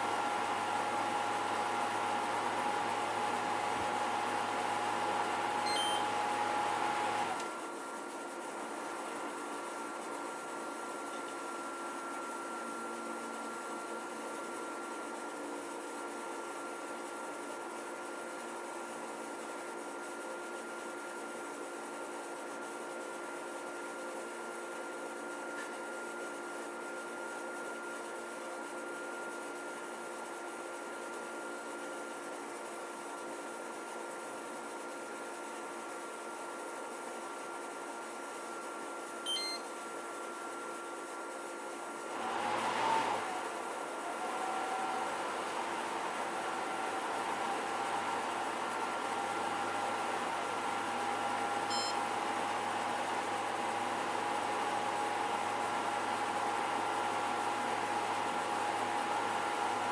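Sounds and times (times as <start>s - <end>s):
air conditioner running: 0.0s - 7.8s, 41.9s - 59.9s.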